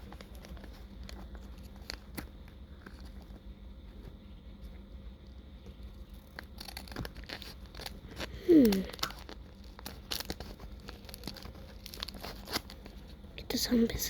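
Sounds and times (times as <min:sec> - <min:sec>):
envelopes rustling and tearing: 0:00.0 - 0:03.4, 0:05.9 - 0:13.2.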